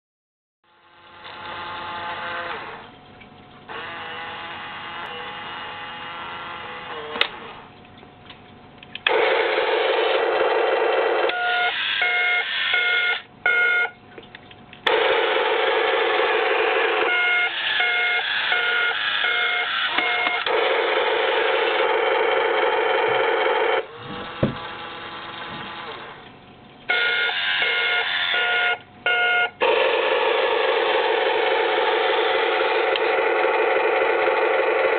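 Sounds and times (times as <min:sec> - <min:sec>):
buzzy electronic machine sound: 0:14.9 - 0:26.2, 0:26.9 - 0:34.9.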